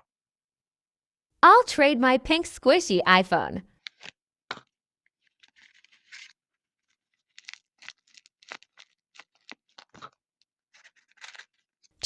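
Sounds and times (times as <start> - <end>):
small ticks and scrapes: 3.8 - 12.0
scratching and rustling: 5.2 - 11.7.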